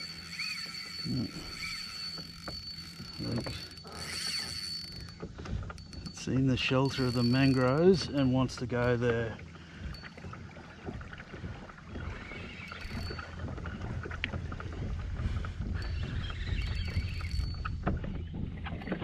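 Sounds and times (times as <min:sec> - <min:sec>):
water sloshing against hull: 0:00.0 - 0:19.0.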